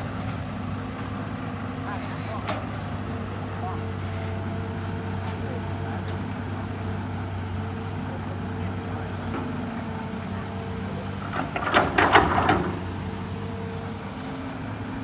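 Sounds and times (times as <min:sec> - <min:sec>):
excavator diesel engine running: 0:00.0 - 0:15.0
clattering knocks: 0:11.2 - 0:12.9.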